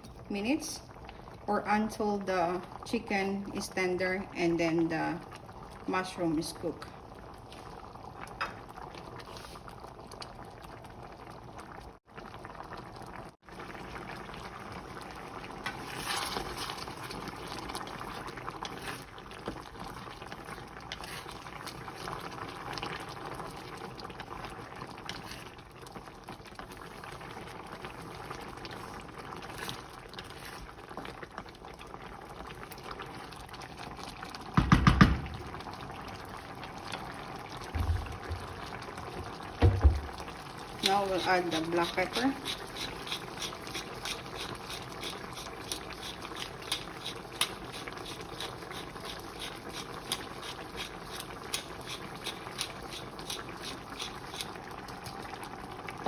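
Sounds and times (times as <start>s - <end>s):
sauce bubbling in a pot: 0.0s - 56.0s
loud knock or clatter: 34.6s - 35.5s.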